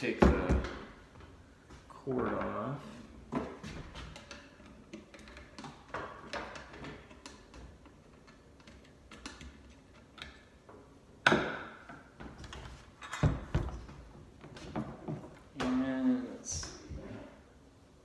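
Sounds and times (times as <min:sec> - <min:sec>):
hand tools clicking and tapping: 0:03.4 - 0:10.7.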